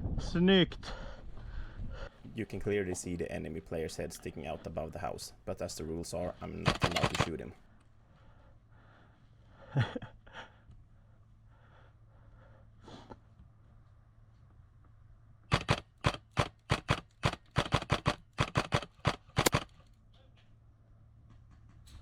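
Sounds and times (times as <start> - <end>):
airsoft gun shots: 6.6 - 7.4, 15.5 - 19.7.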